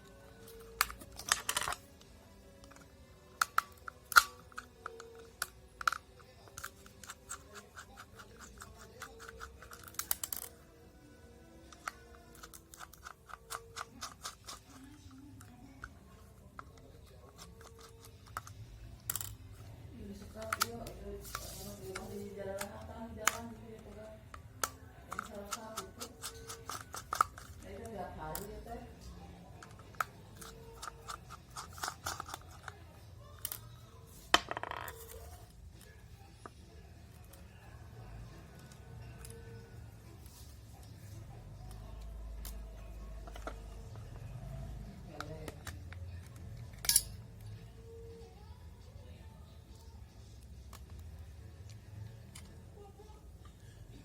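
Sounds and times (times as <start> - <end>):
small plastic parts clicking: 2.6 - 10.6, 11.6 - 27.7, 29.6 - 32.8.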